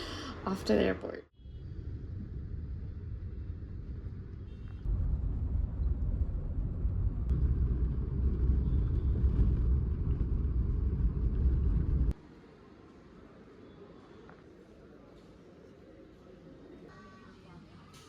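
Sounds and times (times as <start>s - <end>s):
vehicle rumble from inside: 1.4s - 12.2s.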